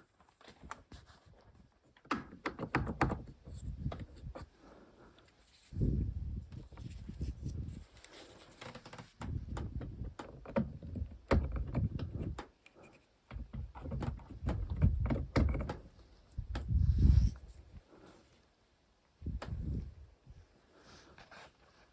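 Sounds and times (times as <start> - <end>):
car door handle clicks and knocks: 9.2 - 12.4, 13.3 - 15.9.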